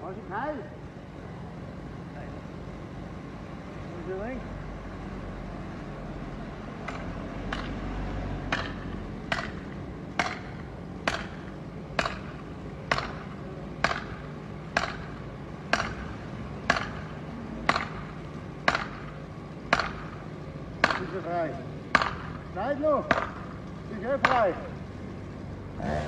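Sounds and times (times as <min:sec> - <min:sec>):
chopping blows on wood: 0:06.8 - 0:07.9, 0:08.5 - 0:14.2, 0:14.8 - 0:16.1, 0:16.7 - 0:17.1, 0:17.7 - 0:18.1, 0:18.7 - 0:19.1, 0:19.7 - 0:20.2, 0:20.8 - 0:21.1, 0:22.0 - 0:22.4, 0:23.0 - 0:23.5, 0:24.2 - 0:24.6
low steady hum: 0:08.9 - 0:25.8.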